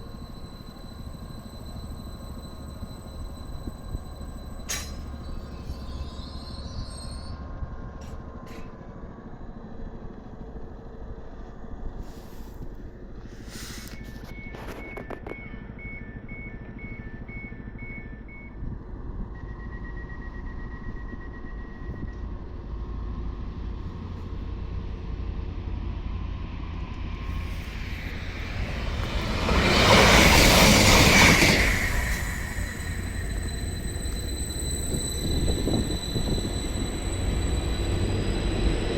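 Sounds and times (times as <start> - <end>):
train passing rumble: 0.0 - 6.6, 7.3 - 38.9
wind rumble on microphone: 34.8 - 36.9.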